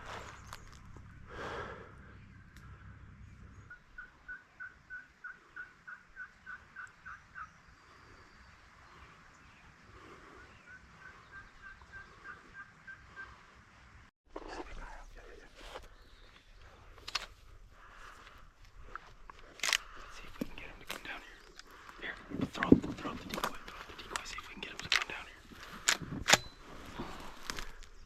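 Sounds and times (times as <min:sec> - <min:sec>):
wild turkey yelping: 0:03.7 - 0:07.6, 0:10.4 - 0:13.3.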